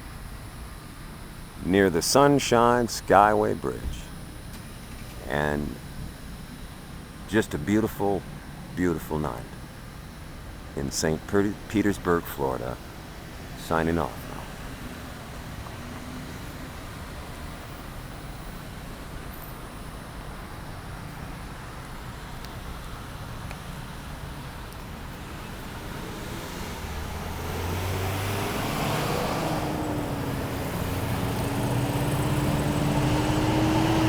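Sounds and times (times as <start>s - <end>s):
hum of passing cars: 11.0s - 34.0s
vehicle engine approaching: 25.1s - 34.0s.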